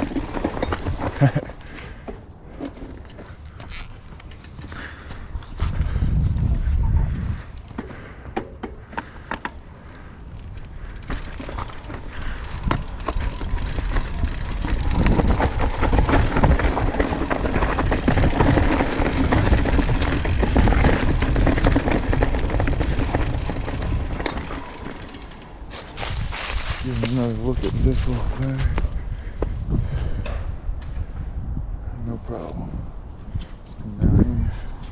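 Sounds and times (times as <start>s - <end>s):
bike rattling over rocks: 0.0s - 6.2s, 9.0s - 28.5s
wind rumble on microphone: 4.8s - 8.0s, 10.0s - 24.8s, 26.0s - 34.9s.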